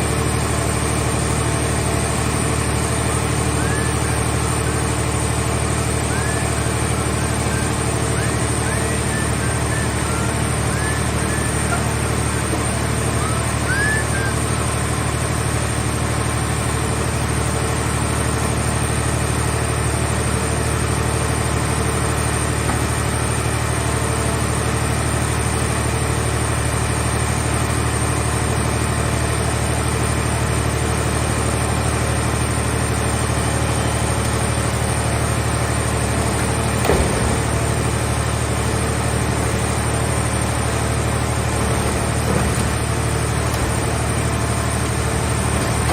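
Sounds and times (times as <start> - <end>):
power unit humming: 0.0 - 45.9.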